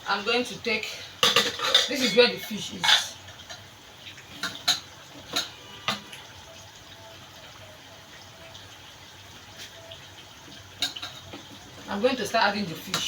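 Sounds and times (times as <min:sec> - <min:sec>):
kitchenware clinking: 0:01.2 - 0:03.7, 0:04.3 - 0:06.1, 0:10.8 - 0:11.4.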